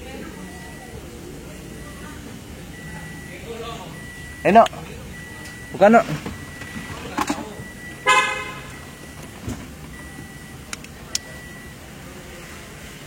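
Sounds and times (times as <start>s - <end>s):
car horn toot: 7.8s - 9.0s.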